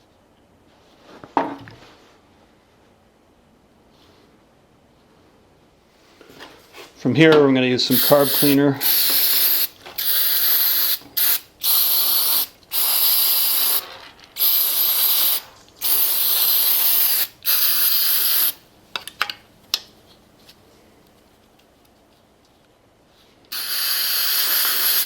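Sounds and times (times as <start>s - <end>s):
aerosol spray hissing: 7.9s - 18.6s, 23.5s - 25.0s.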